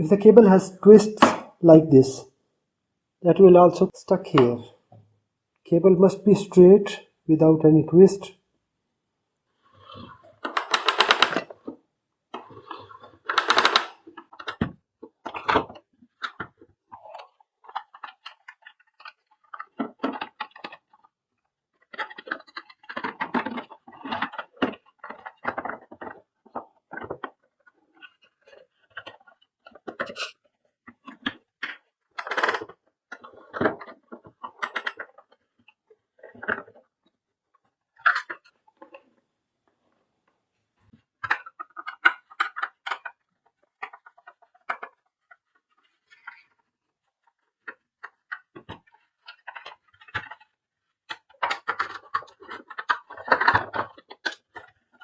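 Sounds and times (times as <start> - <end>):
hands handling plastic parts: 41.2 - 55.0.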